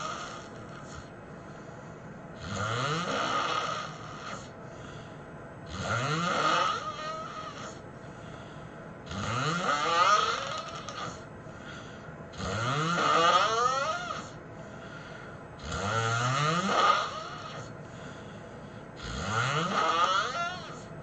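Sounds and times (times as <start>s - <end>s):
person snoring heavily: 0.0s - 1.6s, 2.4s - 21.0s
quiet breathing: 0.0s - 2.6s, 3.8s - 5.7s, 7.0s - 9.2s, 10.8s - 12.4s, 14.2s - 15.8s, 17.1s - 19.3s.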